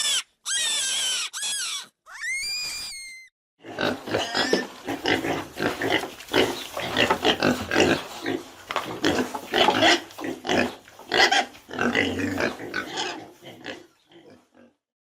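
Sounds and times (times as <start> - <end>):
pigs grunting: 3.6 - 14.8.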